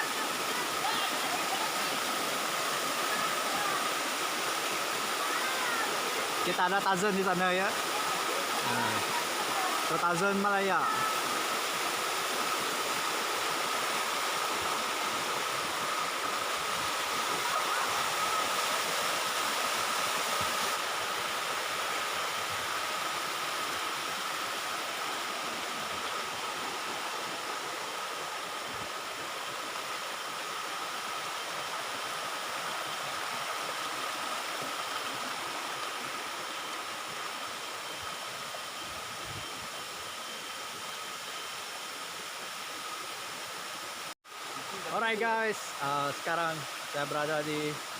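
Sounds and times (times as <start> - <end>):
thin steady high tone: 0.0 - 20.8
waterfall rushing: 0.0 - 47.9.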